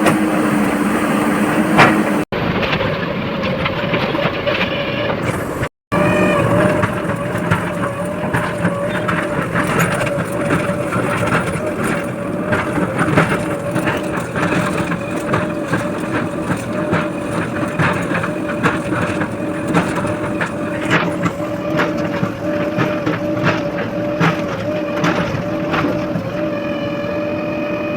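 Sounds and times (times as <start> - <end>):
diesel engine running: 0.0 - 2.7, 3.6 - 27.9
machine knocks and clattering: 5.2 - 26.3.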